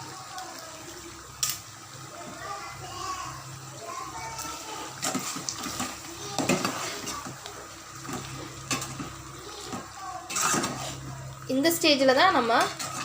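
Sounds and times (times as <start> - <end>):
spoon scraping in cooking pot: 8.1 - 11.0.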